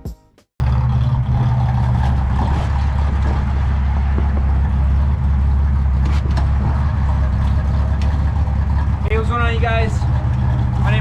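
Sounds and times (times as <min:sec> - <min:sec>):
car engine running: 0:00.6 - 0:11.0.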